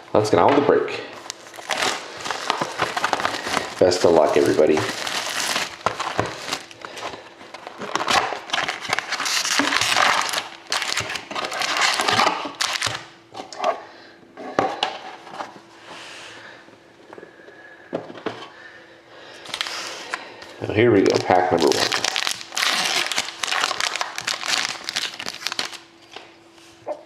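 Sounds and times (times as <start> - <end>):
cardboard and wrappers crinkling: 1.2 - 13.1, 19.4 - 19.8, 21.0 - 25.8.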